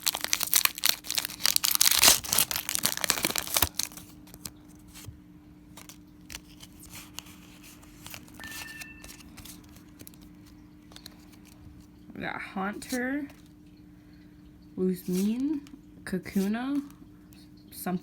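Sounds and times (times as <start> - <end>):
foil wrapper tearing and crinkling: 0.0 - 4.6, 5.8 - 11.6
light clicks and rustles of handling: 5.8 - 12.0.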